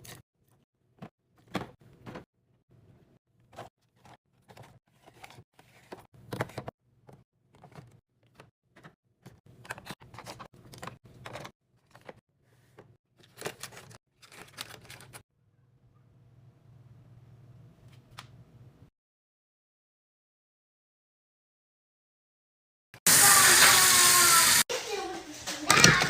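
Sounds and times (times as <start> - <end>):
snack packets rustling and clicking: 13.2 - 15.2.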